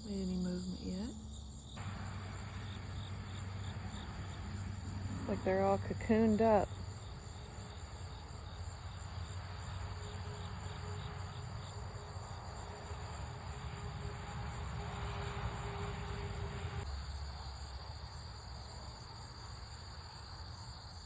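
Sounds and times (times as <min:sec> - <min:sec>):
low hum with faint tone: 0:00.0 - 0:11.8.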